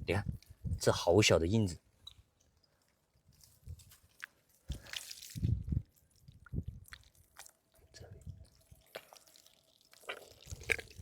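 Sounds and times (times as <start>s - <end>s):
wet mud squelches: 2.8s - 11.0s.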